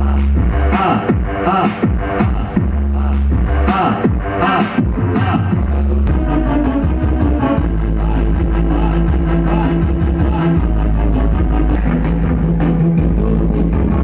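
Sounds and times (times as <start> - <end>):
rock music through car speakers: 0.0 - 14.0.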